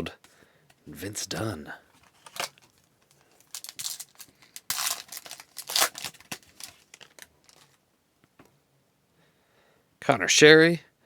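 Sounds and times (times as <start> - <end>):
foil wrapper tearing and crinkling: 2.1 - 7.8.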